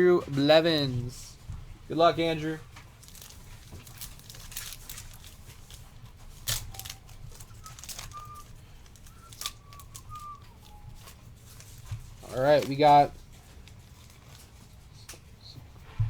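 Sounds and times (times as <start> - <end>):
cards being handled: 0.3 - 15.4
card pack wrapper tearing and crinkling: 2.8 - 14.4.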